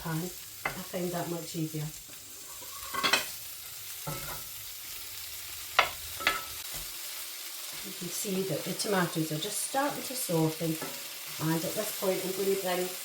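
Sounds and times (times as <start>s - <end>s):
food sizzling in a frying pan: 0.0s - 13.0s
utensil stirring and knocking pan: 0.6s - 0.9s, 2.4s - 3.3s, 4.0s - 4.5s, 5.7s - 6.9s, 10.8s - 11.4s.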